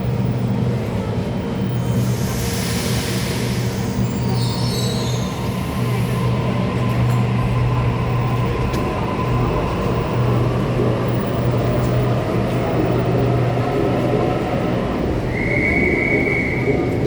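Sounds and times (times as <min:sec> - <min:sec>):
train wheels squealing on rails: 0:01.6 - 0:09.0, 0:14.5 - 0:17.0.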